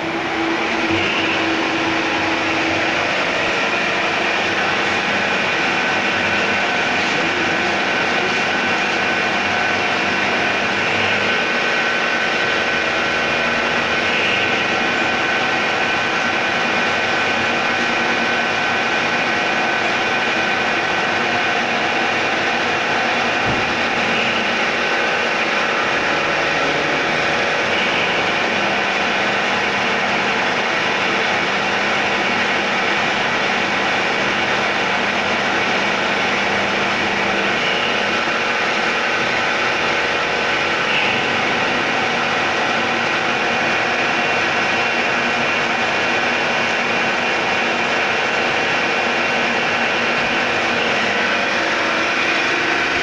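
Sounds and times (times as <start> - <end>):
steady high tone: 0.0 - 32.6, 48.6 - 53.0
milling machine running: 0.0 - 53.0.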